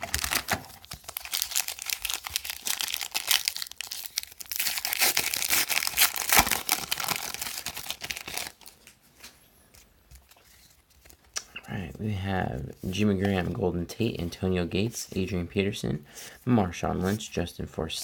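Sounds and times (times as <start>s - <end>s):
wrapper tearing and crinkling: 0.0s - 9.0s.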